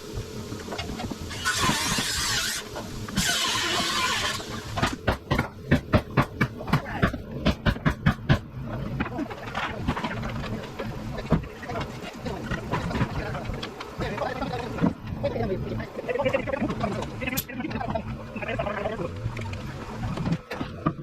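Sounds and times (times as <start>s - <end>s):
hissing bursts: 0.0s - 8.4s
sharp knocks: 4.8s - 8.5s.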